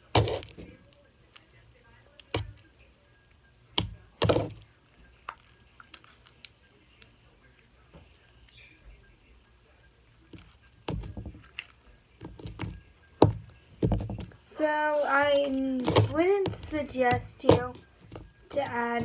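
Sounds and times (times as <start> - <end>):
small things clicking on a desk: 10.3 - 14.5.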